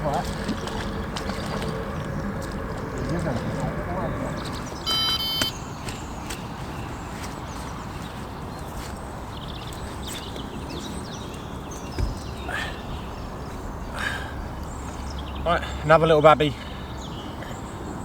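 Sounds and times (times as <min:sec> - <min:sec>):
low outdoor rumble: 0:00.0 - 0:05.3, 0:11.1 - 0:17.6
faint bird chirps: 0:04.4 - 0:07.7.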